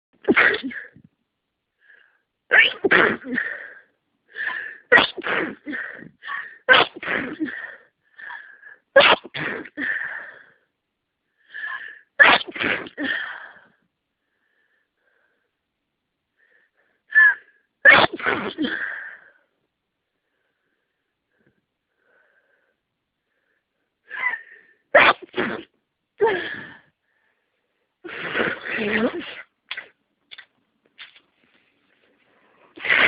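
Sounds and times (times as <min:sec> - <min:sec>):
person sneezing: 0:00.2 - 0:01.0, 0:02.5 - 0:03.7, 0:04.5 - 0:07.8, 0:09.0 - 0:09.9, 0:12.2 - 0:13.4, 0:17.2 - 0:19.1, 0:24.1 - 0:26.8, 0:28.1 - 0:30.0, 0:32.8 - 0:33.0.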